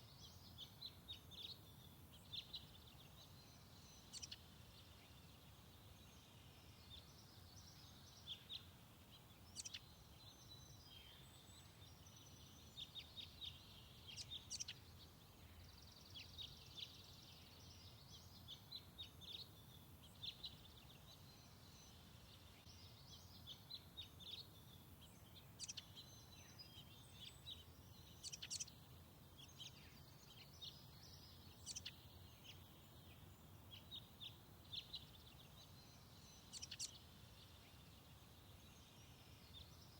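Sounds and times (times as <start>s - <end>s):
birds chirping and trilling: 20.0s - 39.9s.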